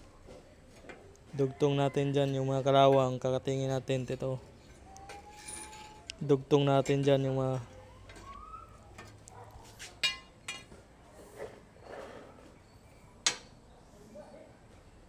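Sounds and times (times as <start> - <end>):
metal parts clinking: 3.9 - 6.2.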